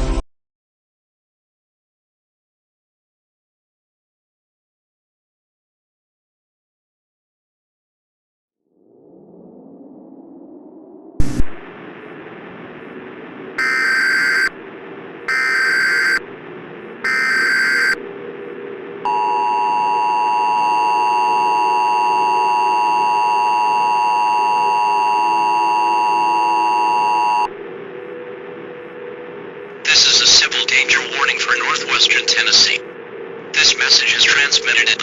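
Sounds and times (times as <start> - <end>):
low steady drone: 8.8 - 35.0
two-tone attention signal: 13.6 - 14.6, 15.3 - 16.2, 17.0 - 18.0, 19.1 - 27.5
warbling data tones: 13.6 - 14.6, 15.3 - 16.2, 17.0 - 18.0, 19.1 - 33.0.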